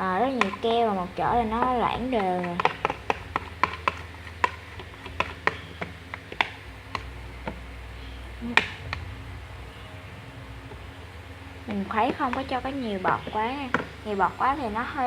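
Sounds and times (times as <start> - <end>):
stirrer tapping against container: 0.2 - 7.6, 12.0 - 14.0.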